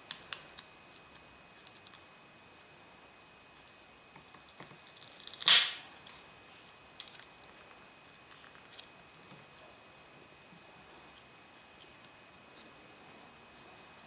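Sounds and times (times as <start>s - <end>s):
loud crackling snap: 5.0s - 5.9s.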